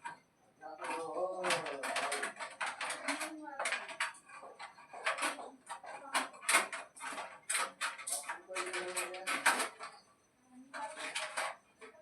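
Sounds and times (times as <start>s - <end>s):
clatter of small hard objects: 0.8s - 12.0s
person speaking: 8.2s - 9.8s.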